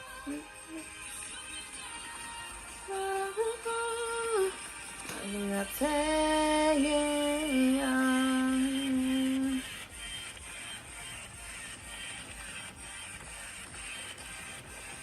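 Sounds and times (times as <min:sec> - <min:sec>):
person singing long held notes: 0:00.0 - 0:09.8.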